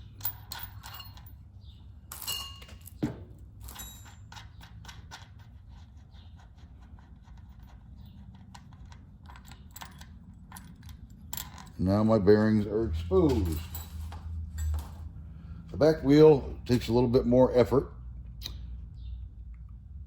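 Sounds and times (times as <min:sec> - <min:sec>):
light metallic clicks and clinks: 0:00.0 - 0:01.5, 0:13.2 - 0:15.2
ringing metal clank: 0:02.1 - 0:03.0.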